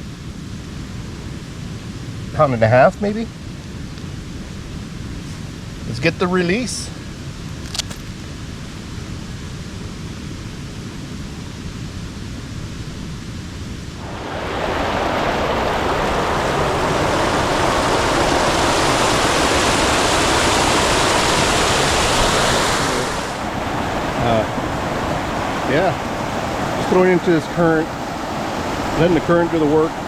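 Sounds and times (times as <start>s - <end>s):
creek water rushing: 14.0s - 30.0s.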